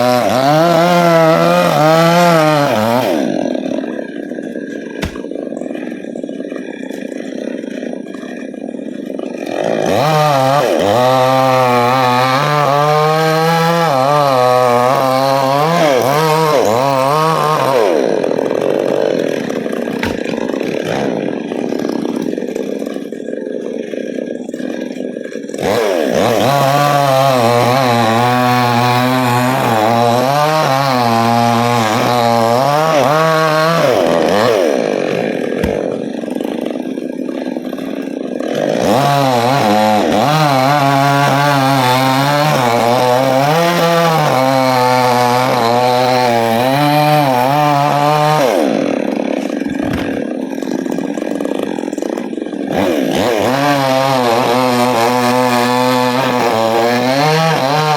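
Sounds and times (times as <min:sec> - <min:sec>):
chainsaw cutting wood: 0:00.0 - 0:57.9.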